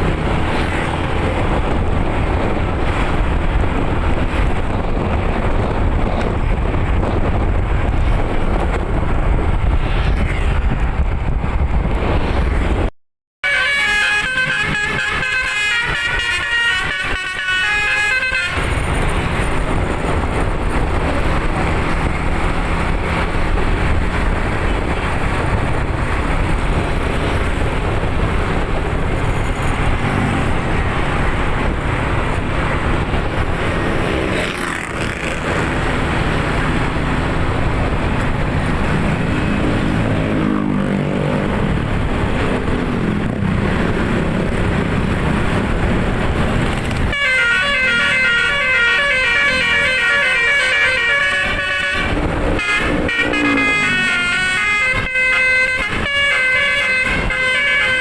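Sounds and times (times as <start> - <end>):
bus engine rumble: 0.0 - 58.0
road noise: 0.0 - 58.0
bus horn melody: 13.4 - 19.0, 47.0 - 58.0.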